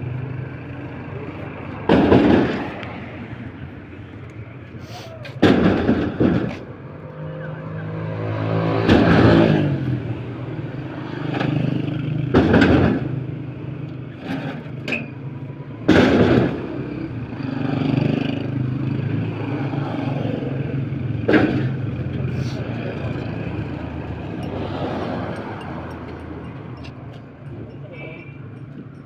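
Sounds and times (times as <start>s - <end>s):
loud clanks and scrapes: 4.8s - 6.8s, 14.1s - 15.2s.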